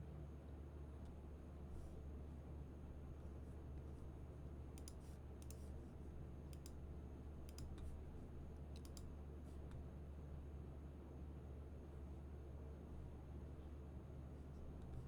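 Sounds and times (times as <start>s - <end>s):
computer mouse clicks: 4.8s - 5.7s, 6.5s - 6.8s, 7.4s - 7.9s, 8.8s - 9.1s.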